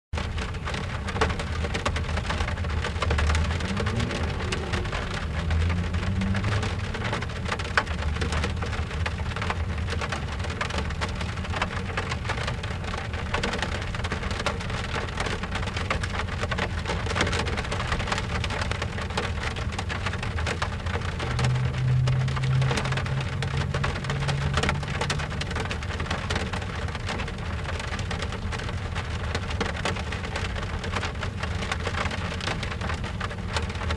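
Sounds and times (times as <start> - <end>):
rain pattering on car window: 0.2 - 33.9
low rumble: 2.2 - 9.8, 19.6 - 27.8.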